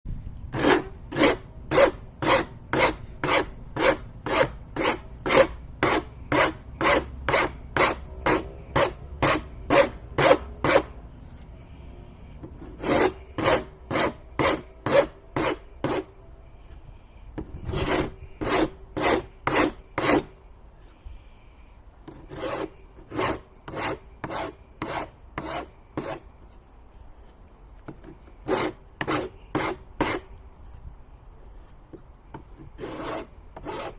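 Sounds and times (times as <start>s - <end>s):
rasp filing wood: 0.5s - 11.0s, 12.5s - 16.1s, 17.4s - 20.4s, 22.1s - 26.2s, 27.9s - 30.3s, 32.6s - 33.9s.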